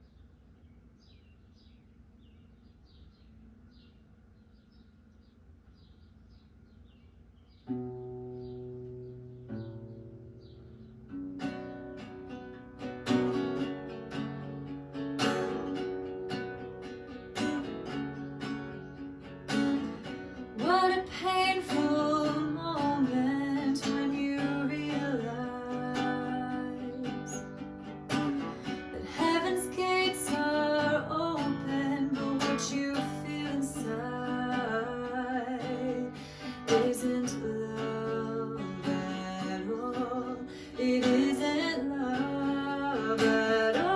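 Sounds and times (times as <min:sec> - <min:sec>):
acoustic guitar playing: 0:07.7 - 0:43.9
woman singing: 0:20.5 - 0:27.6, 0:28.2 - 0:43.9.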